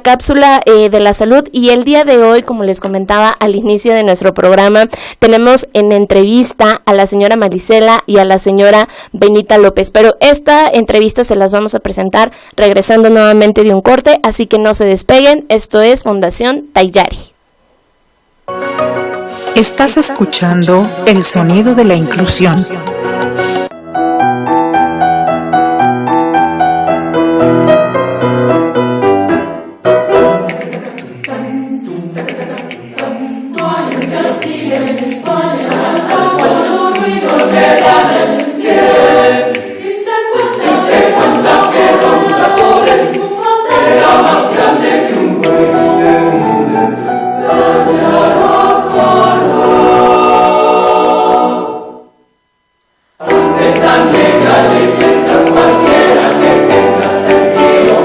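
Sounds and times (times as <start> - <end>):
choral singing: 30.1 - 52.1, 53.2 - 58.0.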